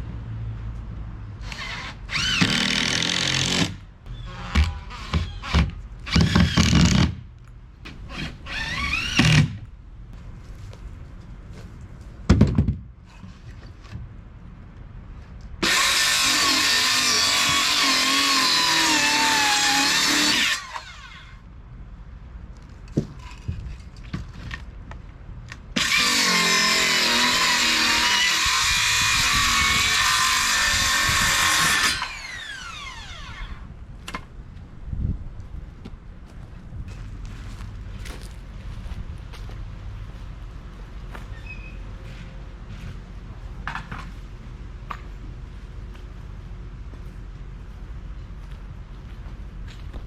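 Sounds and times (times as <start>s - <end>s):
power saw cutting wood: 1.4s - 7.0s, 15.6s - 21.3s, 25.8s - 33.6s
saw blade winding down whine: 25.8s - 33.6s.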